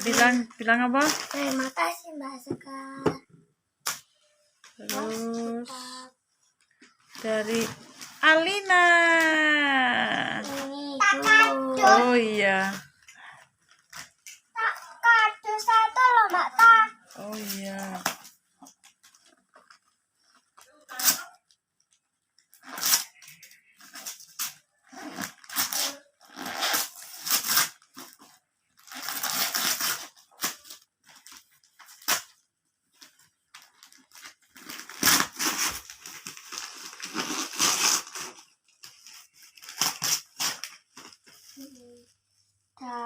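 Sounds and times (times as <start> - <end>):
sharp paper crackle: 0.0 - 2.0, 10.0 - 42.1
wrapping paper tearing and rustling: 0.0 - 2.0, 6.9 - 21.6, 22.3 - 42.2.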